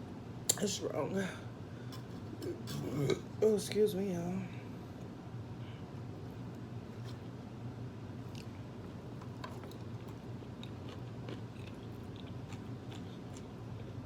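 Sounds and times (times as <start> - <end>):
low steady hum: 0.0 - 14.0
close chewing and biting food: 9.5 - 14.0.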